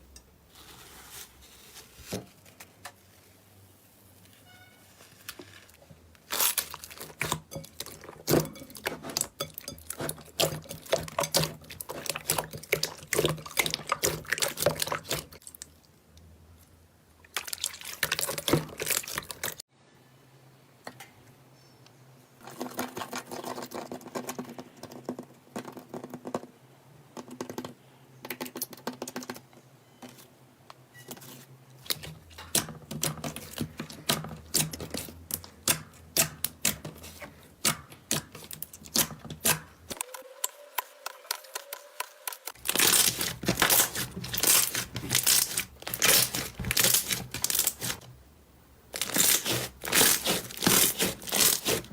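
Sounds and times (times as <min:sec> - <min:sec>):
slime squelching: 0:05.3 - 0:15.9, 0:17.2 - 0:19.6, 0:31.8 - 0:48.2, 0:48.8 - 0:51.9.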